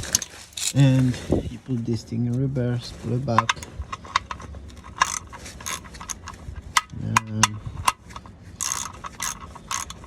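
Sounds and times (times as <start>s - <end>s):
ratchet clicking: 3.4s - 10.0s.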